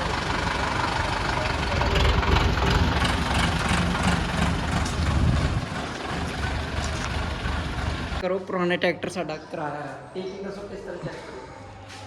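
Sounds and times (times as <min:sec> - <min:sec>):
vehicle engine running: 0:00.0 - 0:08.2.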